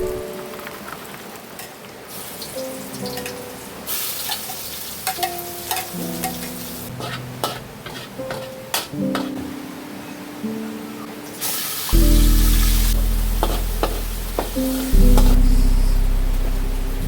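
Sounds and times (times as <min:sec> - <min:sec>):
food sizzling in a pan: 0:02.1 - 0:09.5, 0:11.4 - 0:15.7.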